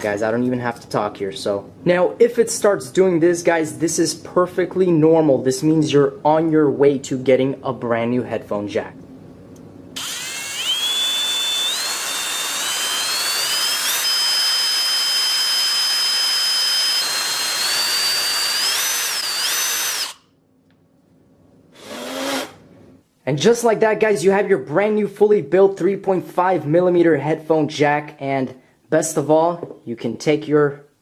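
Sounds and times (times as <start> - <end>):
electric drill whining: 10.0 - 20.2, 21.8 - 22.6.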